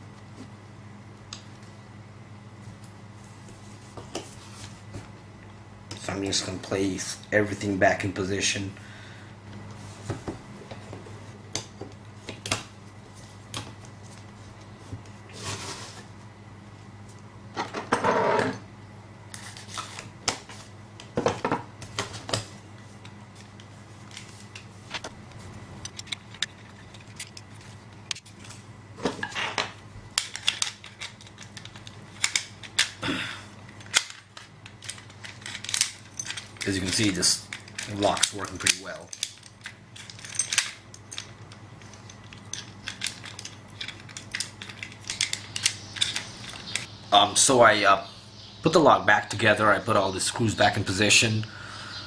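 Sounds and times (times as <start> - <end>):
steady low hum: 0.0 - 52.0
small metal parts clicking: 30.2 - 33.0, 33.7 - 46.9.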